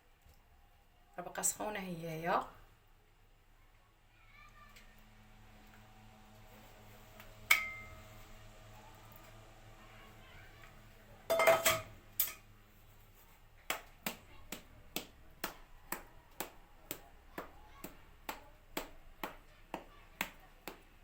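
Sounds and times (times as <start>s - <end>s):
metal utensil tapping on pan: 7.5s - 8.0s, 11.3s - 12.4s.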